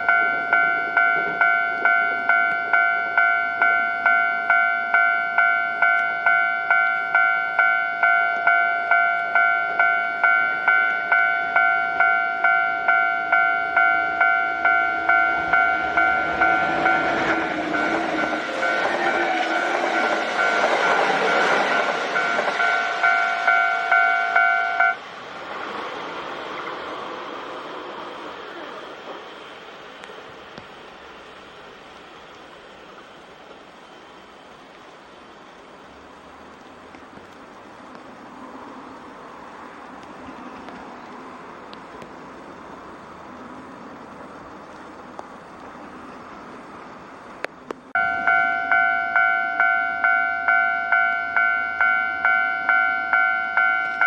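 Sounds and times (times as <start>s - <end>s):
level-crossing warning bell: 0.0s - 25.5s, 47.9s - 54.0s
train wheels running: 0.0s - 54.0s.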